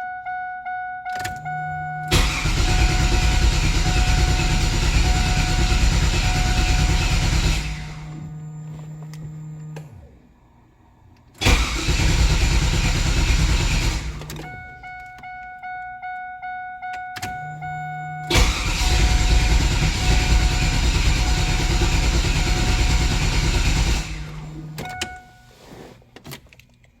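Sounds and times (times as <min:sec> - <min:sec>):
steady low hum: 0:01.4 - 0:26.0
engine cranking on starter: 0:02.1 - 0:10.2, 0:11.4 - 0:14.6, 0:17.2 - 0:25.2.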